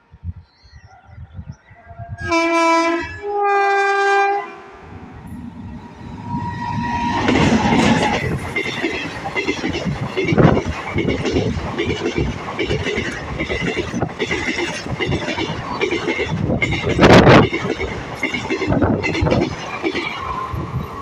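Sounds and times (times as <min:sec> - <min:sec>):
express train rushing past: 0:01.9 - 0:21.0
locomotive horn blasts: 0:02.2 - 0:04.7.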